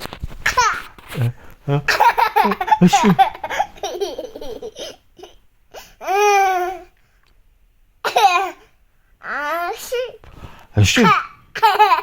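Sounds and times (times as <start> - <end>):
baby laughing and vocalising: 1.9 - 5.4, 11.0 - 12.0.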